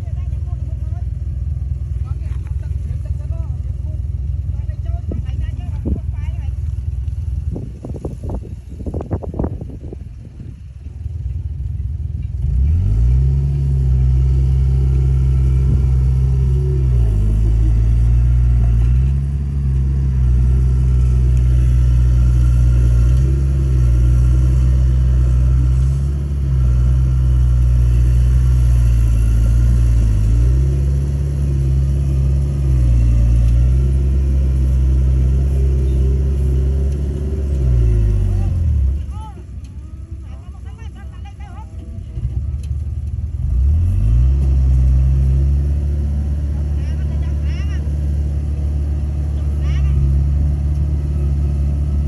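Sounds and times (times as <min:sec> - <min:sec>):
bulldozer diesel engine revving: 0:11.4 - 0:52.0.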